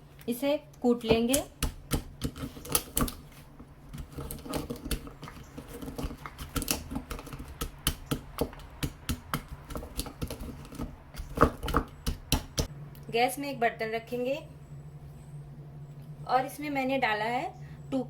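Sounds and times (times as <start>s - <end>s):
pestle pounding spices in mortar: 1.1s - 3.2s, 3.9s - 12.7s.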